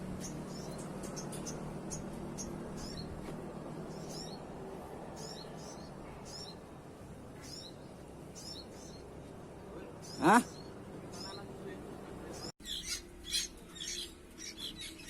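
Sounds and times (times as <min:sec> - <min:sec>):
bird chicks chirping: 0:00.1 - 0:06.8, 0:12.3 - 0:15.0.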